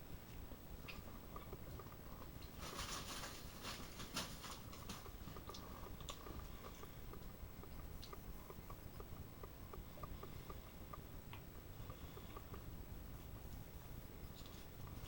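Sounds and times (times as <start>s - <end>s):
crackling clicks: 0.3s - 15.0s
person chewing food: 5.0s - 12.7s.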